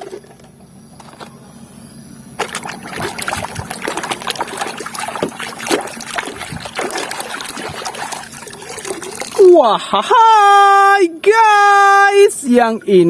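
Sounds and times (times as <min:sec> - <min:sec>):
water splashing and sloshing: 0:02.4 - 0:09.6.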